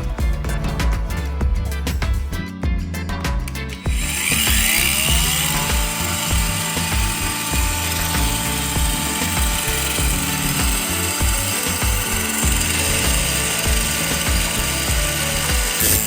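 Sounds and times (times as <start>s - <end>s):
background music: 0.0s - 16.0s
power tool motor spinning: 3.8s - 16.0s.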